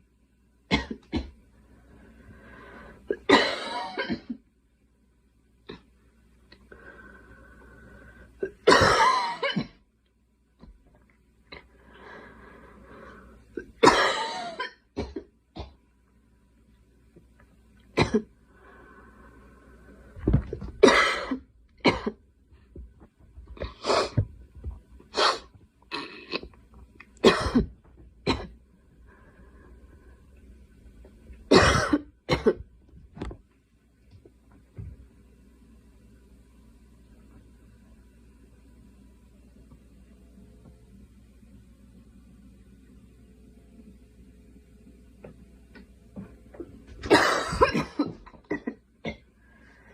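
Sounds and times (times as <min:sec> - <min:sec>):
girl coughing: 0:03.1 - 0:04.4, 0:08.4 - 0:09.8, 0:13.8 - 0:15.8, 0:18.0 - 0:18.3, 0:20.8 - 0:22.2, 0:27.2 - 0:27.7, 0:31.5 - 0:32.6, 0:47.0 - 0:49.2.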